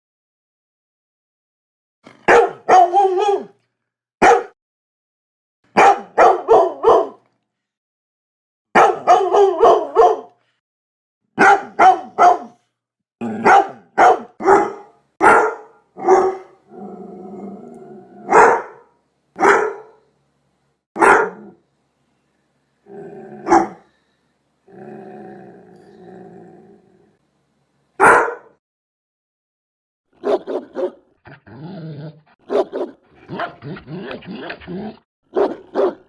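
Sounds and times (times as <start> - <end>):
dog barking deeply: 2.2 - 3.6, 4.2 - 4.6, 5.8 - 7.2, 8.8 - 10.4, 11.4 - 12.6, 13.2 - 16.8, 18.1 - 20.0, 21.0 - 21.6, 22.9 - 23.9, 28.0 - 28.6, 30.2 - 31.4, 32.4 - 33.8, 35.3 - 36.0
dog growling: 13.2 - 13.6, 16.4 - 18.3, 22.8 - 23.9, 24.7 - 27.2, 31.3 - 32.4.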